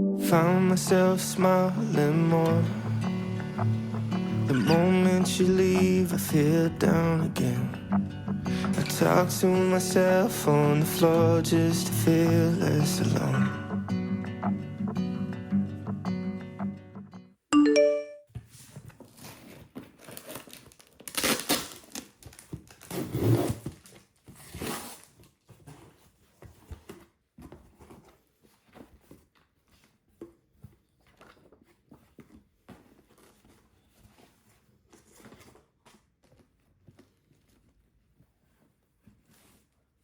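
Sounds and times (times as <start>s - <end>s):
packaging tearing and crinkling: 19.1s - 25.4s.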